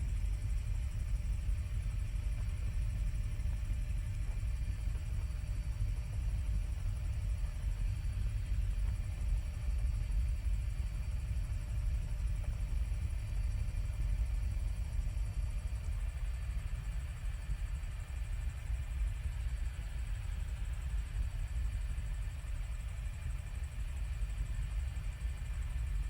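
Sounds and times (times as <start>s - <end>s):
helicopter rotor rumble: 0.0s - 26.0s.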